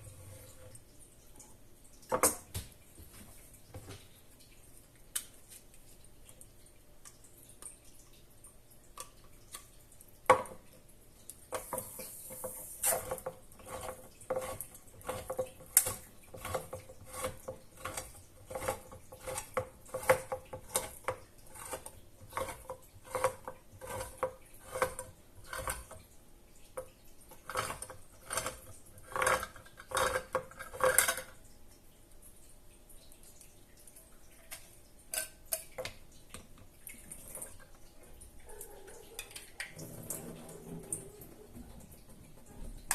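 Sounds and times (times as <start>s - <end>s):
cutlery clinking against a bowl: 35.1s - 36.0s.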